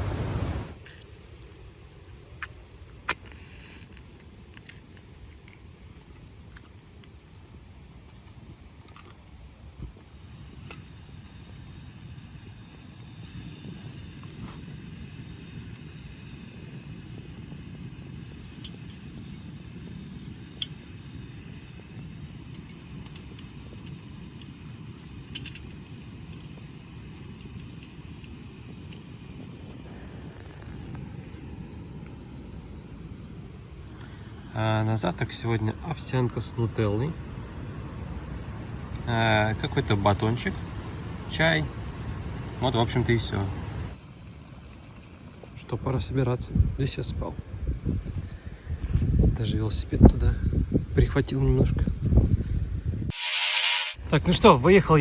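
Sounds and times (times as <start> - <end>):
wind noise on microphone: 9.8 - 43.9, 46.3 - 53.2.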